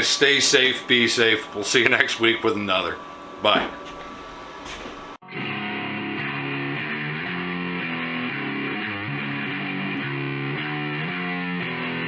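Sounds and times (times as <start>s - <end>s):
distorted electric guitar chords: 3.0s - 12.0s.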